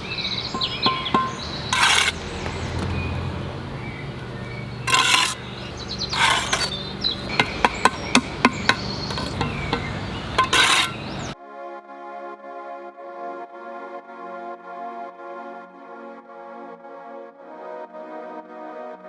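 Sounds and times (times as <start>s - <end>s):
sharp trowel taps: 0.0s - 3.0s, 4.9s - 11.4s
trowel scraping: 0.0s - 3.4s, 4.1s - 11.4s
birds chirping faintly: 0.0s - 11.4s
low engine-like hum: 0.0s - 11.4s.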